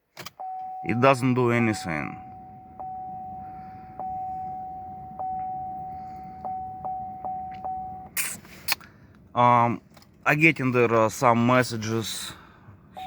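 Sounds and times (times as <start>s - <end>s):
car warning chime tone: 0.3s - 8.2s.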